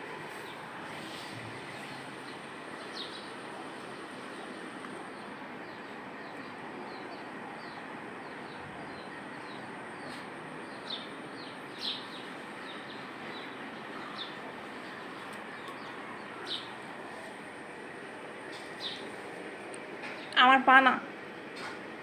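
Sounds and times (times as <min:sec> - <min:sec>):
steady background noise: 0:00.0 - 0:22.0
small birds chirping: 0:00.3 - 0:21.0.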